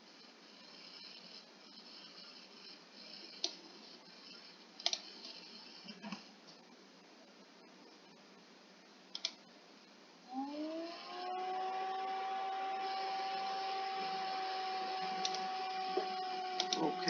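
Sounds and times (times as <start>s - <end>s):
quick clicks: 4.8s - 5.4s, 9.1s - 9.4s, 15.2s - 16.9s
machine hum rising in pitch: 10.3s - 17.0s.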